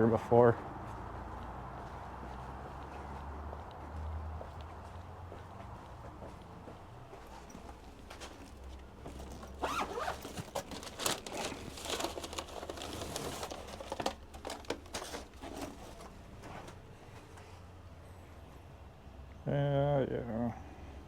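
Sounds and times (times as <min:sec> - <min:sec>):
packaging crinkling: 0:09.2 - 0:16.2
zipper being pulled: 0:09.6 - 0:10.5.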